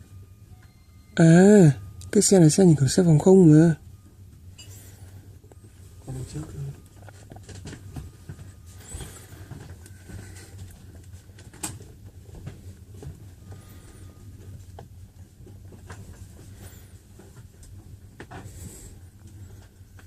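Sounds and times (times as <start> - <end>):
train carriage hum: 0.0 - 20.0.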